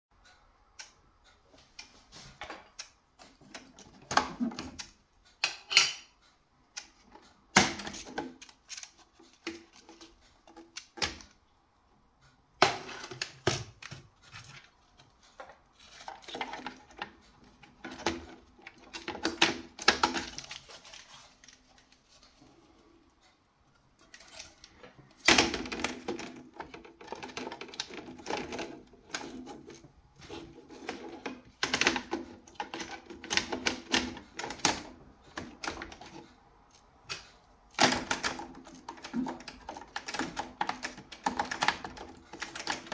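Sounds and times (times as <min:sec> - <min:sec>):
clicks and rattling on boiler casing: 0:12.5 - 0:21.6, 0:24.0 - 0:42.9.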